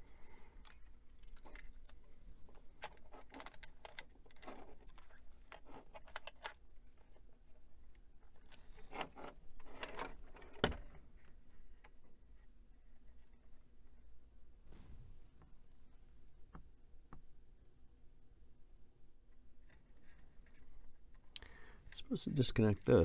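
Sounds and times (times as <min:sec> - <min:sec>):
small clicks and rattles of parts: 0:00.6 - 0:12.1.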